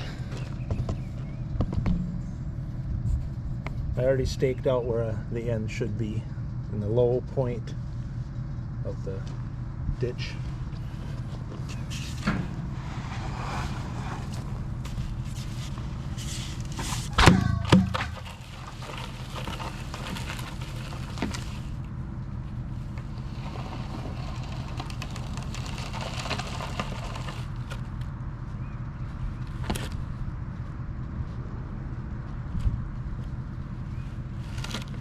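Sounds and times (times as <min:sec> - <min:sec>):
engine running at low revs: 0:00.0 - 0:35.0
loud clanks: 0:11.6 - 0:14.9, 0:16.8 - 0:21.6.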